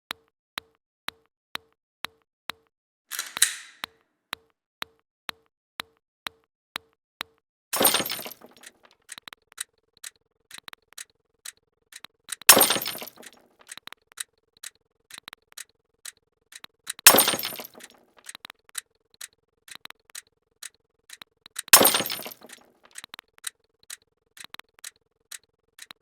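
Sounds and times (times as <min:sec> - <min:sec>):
glass shattering: 0:07.8 - 0:08.8, 0:12.5 - 0:13.4, 0:17.1 - 0:18.0, 0:21.7 - 0:22.6.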